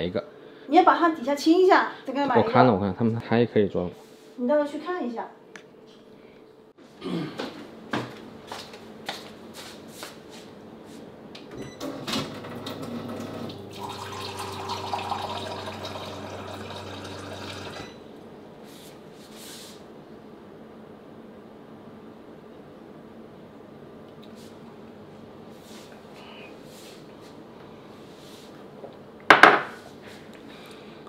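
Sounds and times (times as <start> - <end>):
water running from tap: 12.8 - 17.9.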